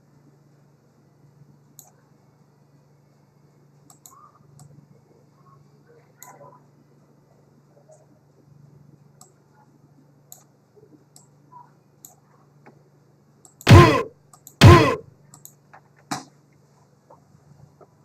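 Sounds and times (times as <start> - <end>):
loud short sound effect bursts: 13.7 - 15.0.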